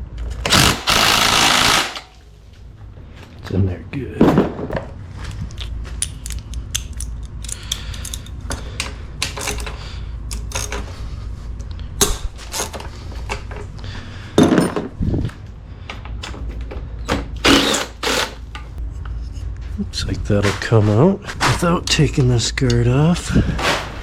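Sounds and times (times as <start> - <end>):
steady low hum: 0.0 - 24.0
metal tool clicks and knocks: 6.0 - 10.8.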